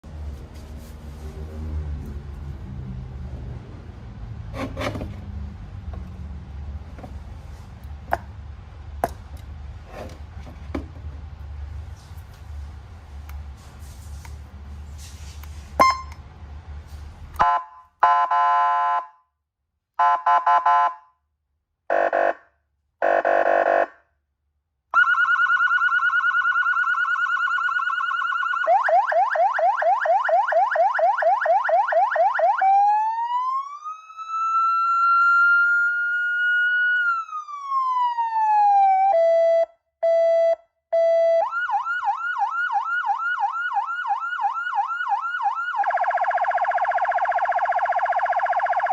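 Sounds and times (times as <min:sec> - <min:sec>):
electronic police siren: 0:24.9 - 0:48.9.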